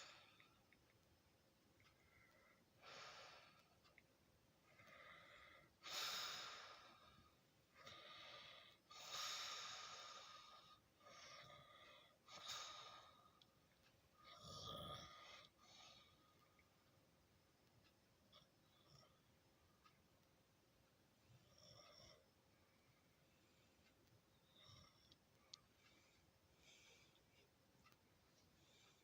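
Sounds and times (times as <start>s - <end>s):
person breathing heavily in sleep: 2.0s - 3.8s, 4.6s - 13.4s, 25.8s - 27.5s.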